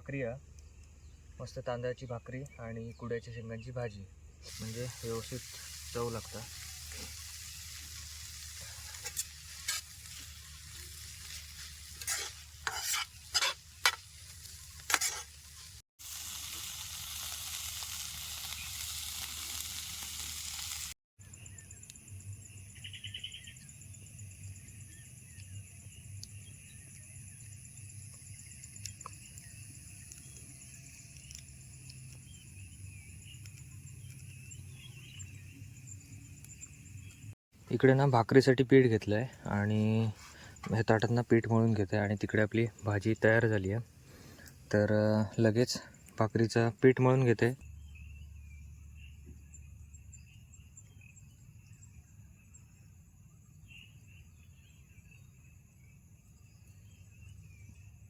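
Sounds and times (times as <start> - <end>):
curry sizzling in pan: 4.5 - 21.0
spatula scraping pan: 8.5 - 15.8.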